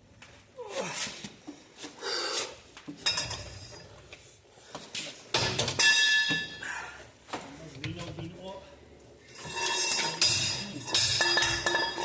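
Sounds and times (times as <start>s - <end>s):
steel tools clanking together: 9.4s - 12.0s.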